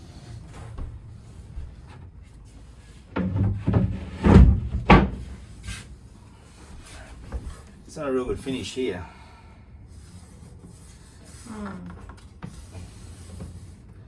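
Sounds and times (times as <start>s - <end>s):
wooden knocks and clunks: 3.1s - 5.8s.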